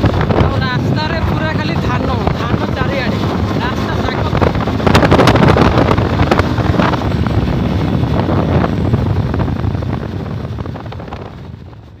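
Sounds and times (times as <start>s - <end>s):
motorcycle running: 0.0s - 12.0s
wind buffeting microphone: 0.0s - 12.0s.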